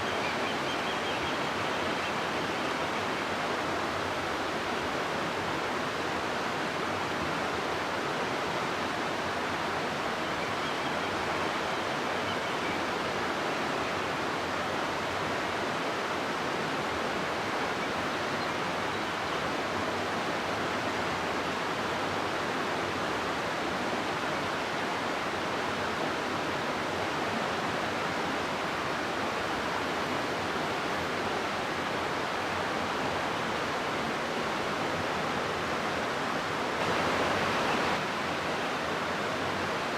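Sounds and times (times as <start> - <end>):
river water rushing over rocks: 19.6 - 39.9.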